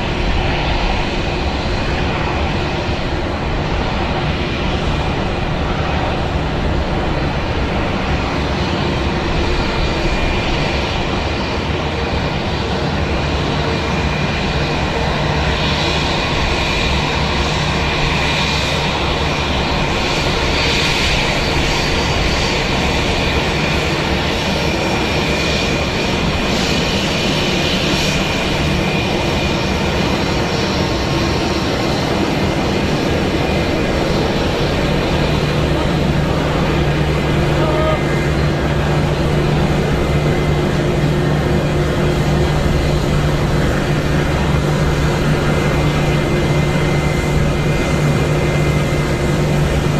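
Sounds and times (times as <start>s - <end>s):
jet engines running: 0.0s - 49.9s
high whine: 33.4s - 49.9s.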